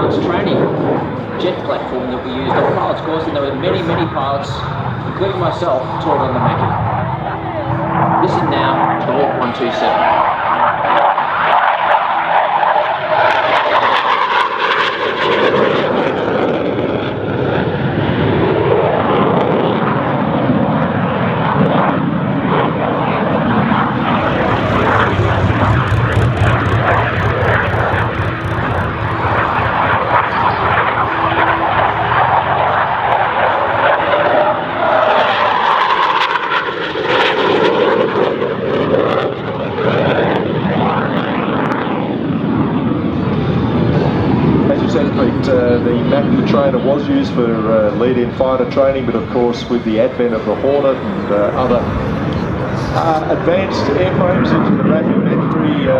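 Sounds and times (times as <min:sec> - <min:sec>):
jet engine passing: 0:00.0 - 0:55.9.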